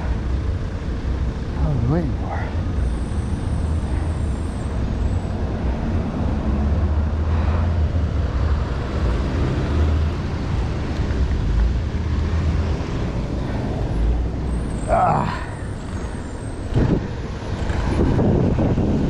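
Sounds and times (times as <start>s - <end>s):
road noise: 0.0s - 19.0s
wind rumble on microphone: 16.6s - 19.0s.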